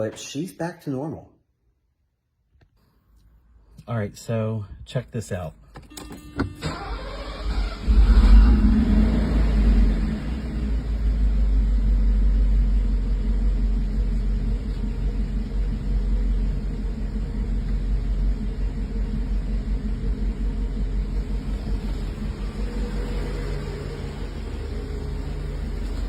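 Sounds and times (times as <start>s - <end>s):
car engine idling: 6.7s - 26.0s.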